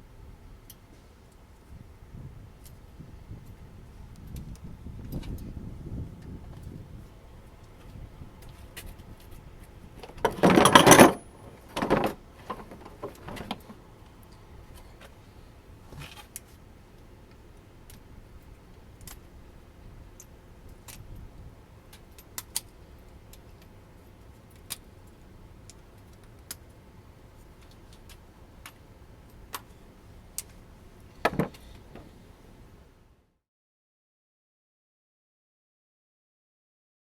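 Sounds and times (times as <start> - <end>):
loud metal clunk: 10.0 - 13.7, 31.2 - 31.7
metal tools clinking: 10.0 - 13.8, 31.2 - 31.7.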